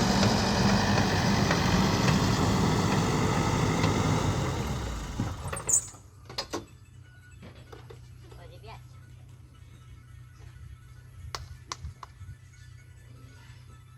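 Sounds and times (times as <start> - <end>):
backhoe diesel engine running: 0.0 - 11.1.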